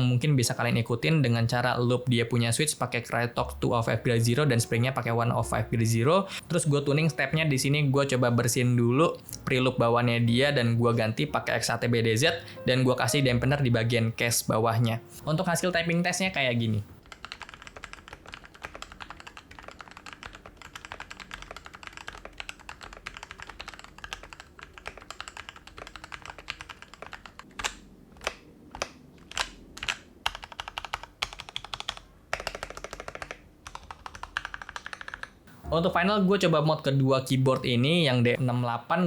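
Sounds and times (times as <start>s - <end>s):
mechanical keyboard typing: 15.6s - 35.4s.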